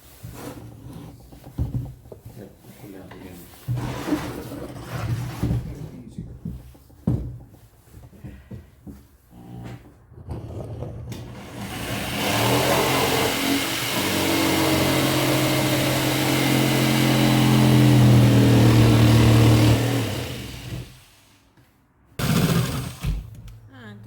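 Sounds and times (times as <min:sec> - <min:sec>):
power saw cutting wood: 0:11.2 - 0:21.3, 0:22.2 - 0:23.2.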